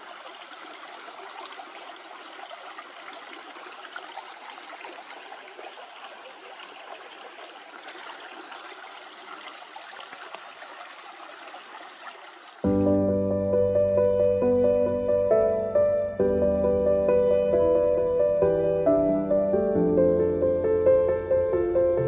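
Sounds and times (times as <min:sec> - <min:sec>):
stream water flowing: 0:00.0 - 0:13.4.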